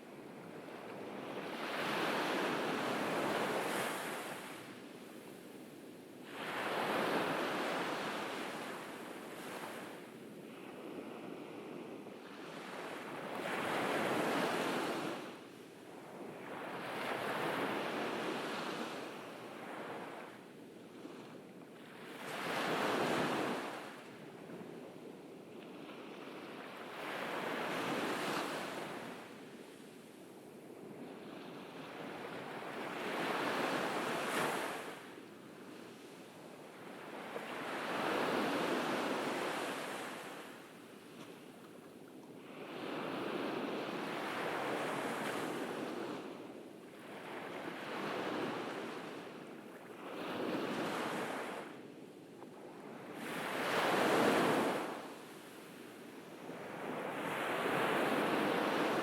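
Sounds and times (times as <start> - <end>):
ocean waves breaking on beach: 6.2 - 20.4, 25.7 - 35.3, 36.6 - 41.0, 42.4 - 52.0, 52.6 - 59.0.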